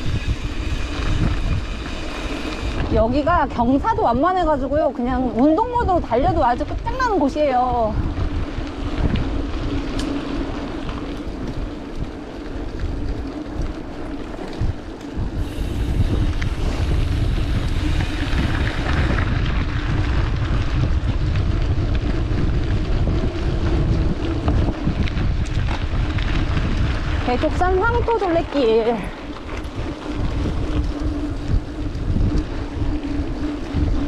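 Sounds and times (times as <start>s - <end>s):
wind rumbling over microphone: 0.0s - 34.0s.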